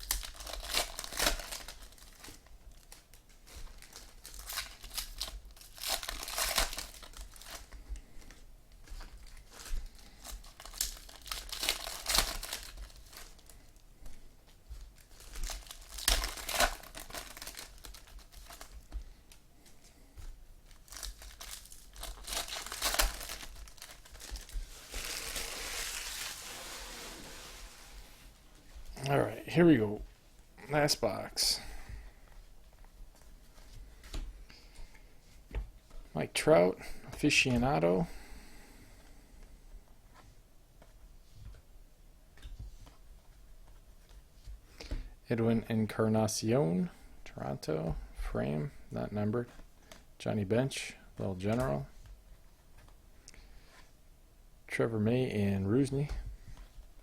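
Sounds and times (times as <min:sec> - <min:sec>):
card pack wrapping crinkling: 0:00.0 - 0:08.4, 0:09.0 - 0:13.8, 0:15.0 - 0:19.1, 0:20.6 - 0:28.4
rustling: 0:00.0 - 0:28.9.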